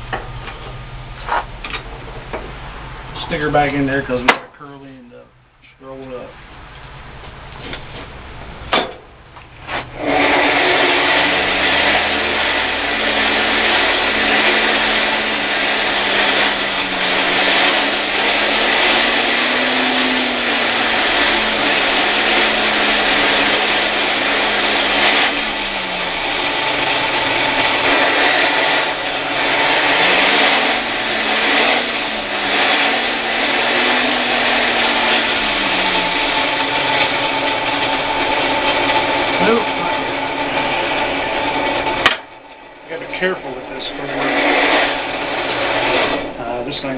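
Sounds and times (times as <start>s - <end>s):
forge blower rushing and whining: 0.0s - 46.9s
sharp knocks: 8.7s - 9.2s.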